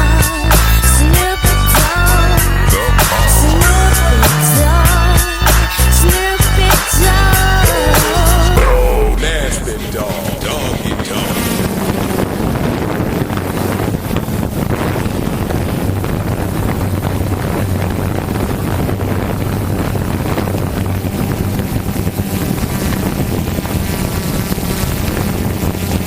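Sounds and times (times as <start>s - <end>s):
wind noise on microphone: 2.4s - 26.0s
drone propellers humming: 2.7s - 13.2s.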